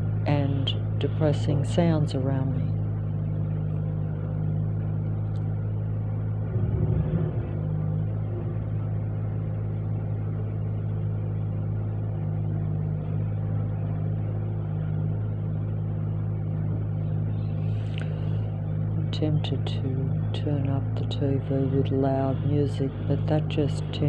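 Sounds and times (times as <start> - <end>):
low droning hum: 0.0 - 24.0
brief rumble: 6.4 - 9.2.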